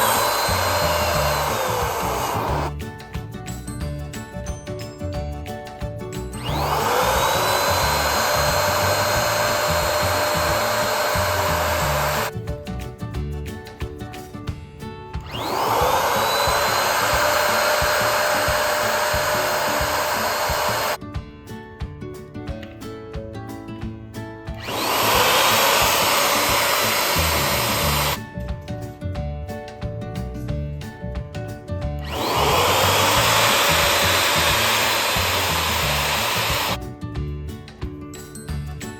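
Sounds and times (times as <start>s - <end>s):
electric balloon pump motor: 0.0s - 2.8s, 6.3s - 12.3s, 15.2s - 21.0s, 24.6s - 28.2s, 32.0s - 36.8s
background music with beat: 0.0s - 38.9s.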